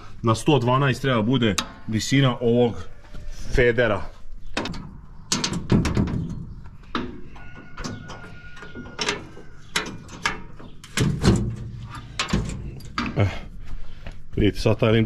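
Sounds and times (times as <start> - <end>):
hand tools clanking on metal: 1.3 - 2.6, 4.5 - 13.5
thin steady squeal: 6.8 - 11.0.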